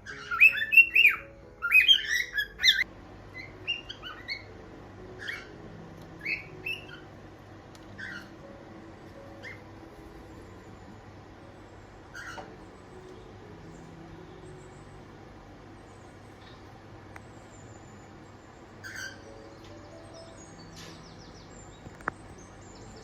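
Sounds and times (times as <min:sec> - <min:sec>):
cockatiels chirping: 0:00.0 - 0:07.2, 0:07.8 - 0:10.7, 0:12.0 - 0:15.0, 0:18.7 - 0:23.0.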